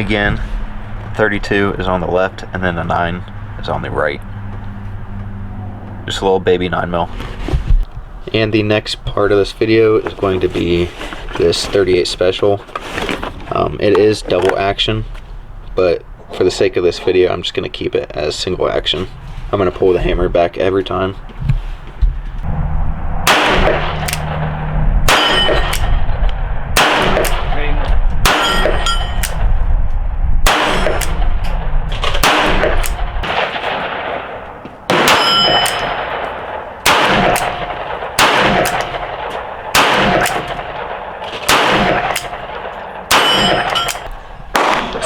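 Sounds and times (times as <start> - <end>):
metallic ringing: 22.4 - 26.2, 28.3 - 29.4, 35.0 - 36.8, 41.9 - 44.3
revolver gunshots: 22.5 - 29.6, 30.4 - 45.0.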